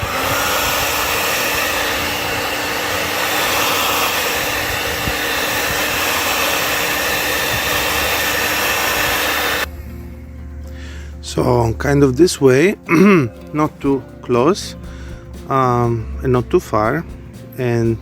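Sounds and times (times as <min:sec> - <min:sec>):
heat gun blowing air: 0:00.0 - 0:09.7.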